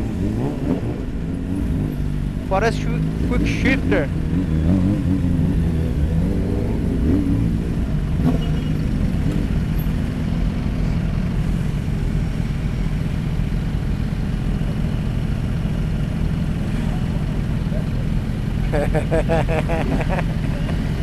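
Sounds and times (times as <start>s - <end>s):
motorcycle engine revving: 0.0s - 13.1s.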